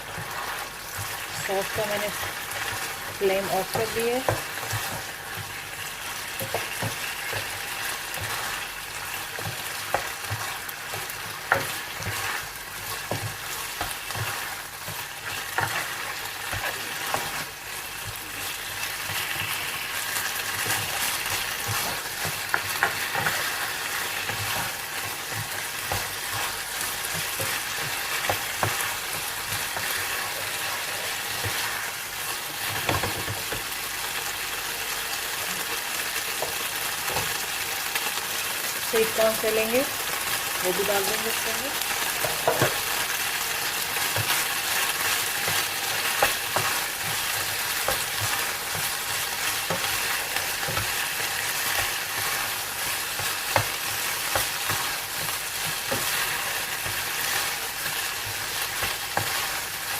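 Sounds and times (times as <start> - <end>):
food sizzling in a pan: 0.0 - 59.9
spoon scraping and knocking pan: 0.1 - 33.8, 41.0 - 59.9.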